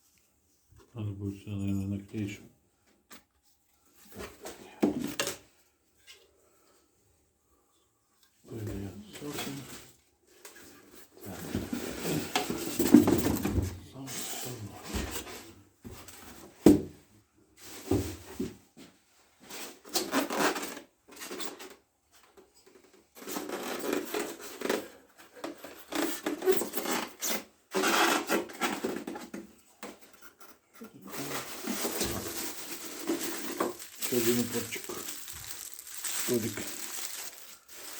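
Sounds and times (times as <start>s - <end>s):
packaging rubbing and rustling: 31.1s - 37.9s.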